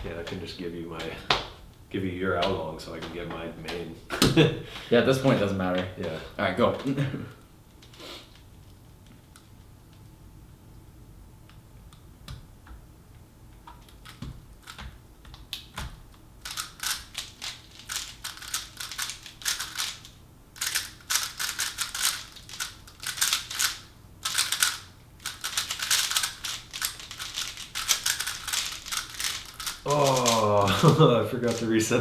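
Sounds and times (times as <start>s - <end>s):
puzzle cube clicking: 16.4s - 31.8s.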